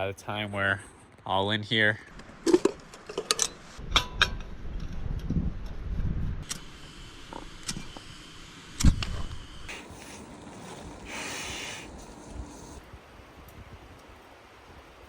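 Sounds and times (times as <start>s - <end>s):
short hiss: 9.7s - 12.8s.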